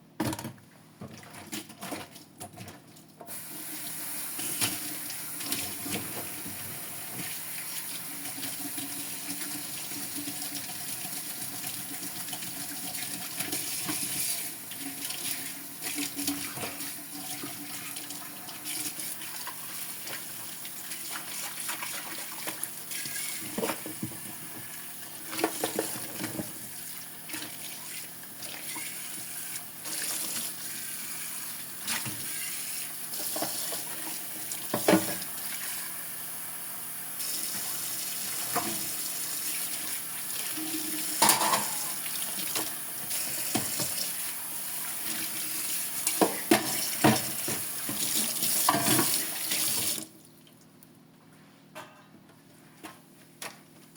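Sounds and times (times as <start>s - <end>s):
tap water running into sink: 3.3s - 26.7s, 37.2s - 44.2s, 44.8s - 50.1s
dishes clinking and clattering: 40.6s - 42.0s.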